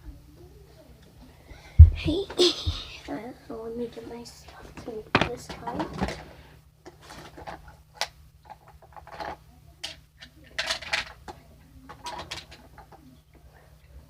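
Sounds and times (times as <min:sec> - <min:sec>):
household items knocking and clicking: 0:05.1 - 0:06.2.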